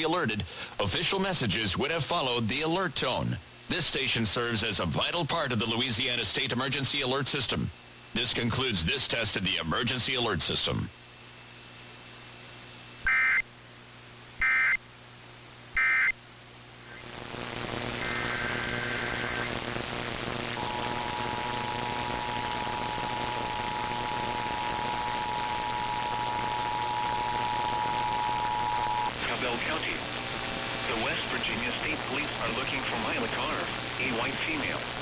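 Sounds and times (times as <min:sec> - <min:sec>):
static hiss: 0:00.0 - 0:35.0
digital data bursts: 0:15.8 - 0:16.1, 0:16.9 - 0:35.0.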